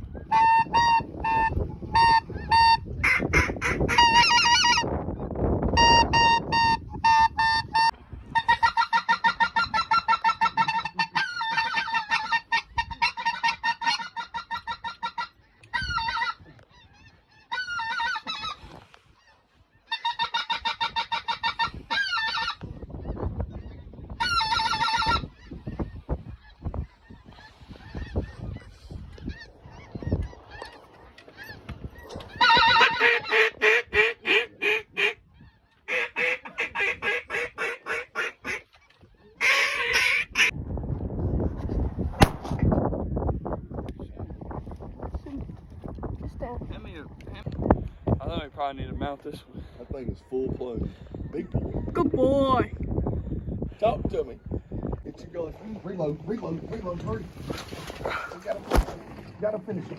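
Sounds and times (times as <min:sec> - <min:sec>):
waterfowl honking quacks: 0:00.3 - 0:04.8, 0:05.8 - 0:22.6, 0:24.2 - 0:25.8, 0:32.3 - 0:40.5.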